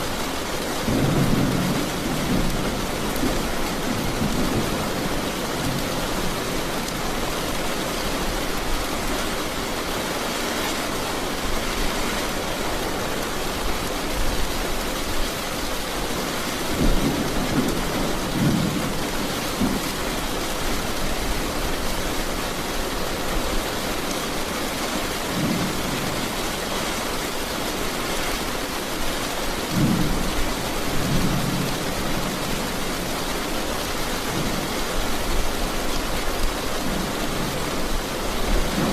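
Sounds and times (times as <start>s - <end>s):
steady rain: 0.0s - 38.9s
thunder rumbles: 0.8s - 7.1s, 16.6s - 20.2s, 29.7s - 33.1s, 36.8s - 38.9s.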